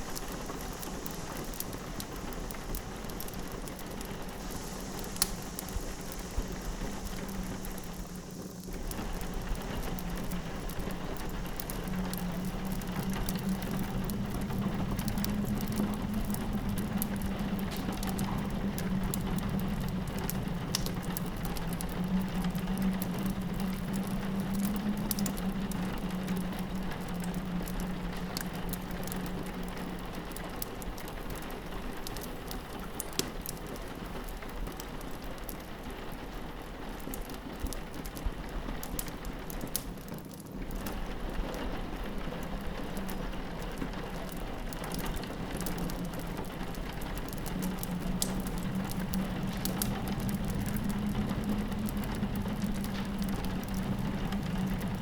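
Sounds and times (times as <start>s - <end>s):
wind howling: 0.0s - 30.4s, 40.6s - 55.0s
log fire crackling: 0.0s - 55.0s
rain pattering on a window: 0.0s - 55.0s.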